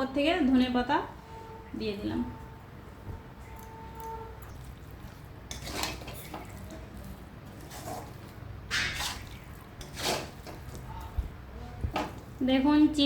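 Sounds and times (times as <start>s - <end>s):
spoon scraping and clinking on dish: 3.6s - 10.8s.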